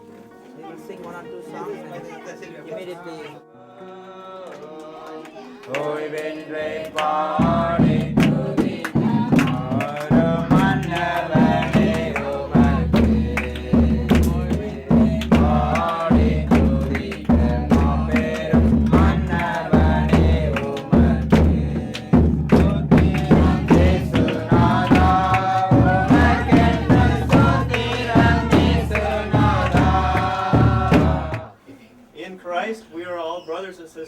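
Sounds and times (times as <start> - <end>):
person singing: 3.4 - 31.6
steady drum beat: 6.1 - 31.6.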